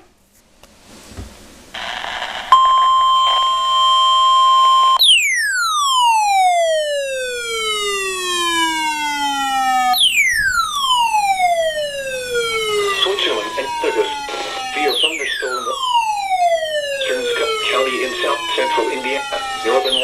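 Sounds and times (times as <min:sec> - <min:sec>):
siren-like tone sweeping down: 0:02.5 - 0:20.0
steady alert tone: 0:12.4 - 0:20.0.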